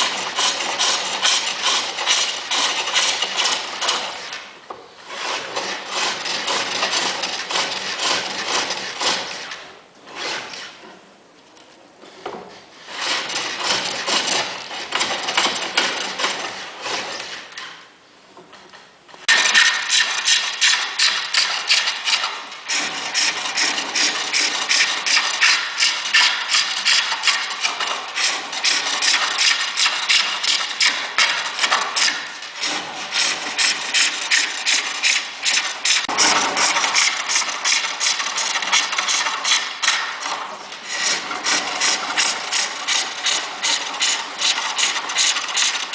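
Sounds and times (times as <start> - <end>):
lathe tool cutting workpiece: 0.0 - 4.2, 19.3 - 40.2.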